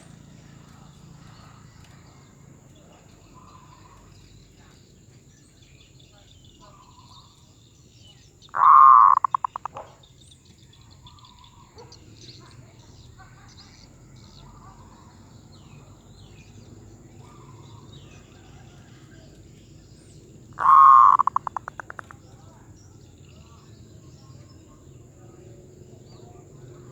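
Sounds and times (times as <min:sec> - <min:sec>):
faint bird or insect chirping: 0:00.0 - 0:26.9
dove cooing: 0:08.6 - 0:09.8, 0:20.6 - 0:22.2.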